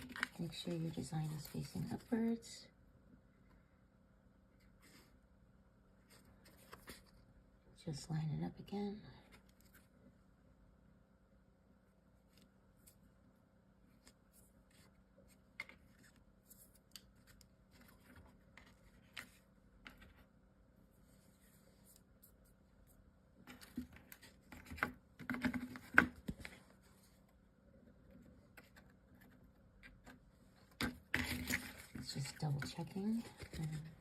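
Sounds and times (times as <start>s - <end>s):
paper and chipboard handling: 0.0s - 2.2s, 28.4s - 34.0s.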